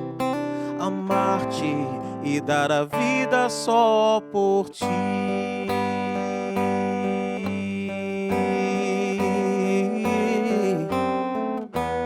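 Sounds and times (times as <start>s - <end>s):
acoustic guitar chords: 0.0s - 12.0s.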